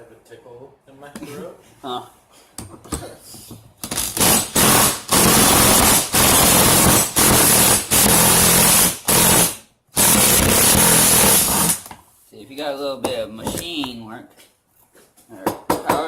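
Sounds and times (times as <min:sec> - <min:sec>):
impact wrench bursts: 0:03.8 - 0:11.9.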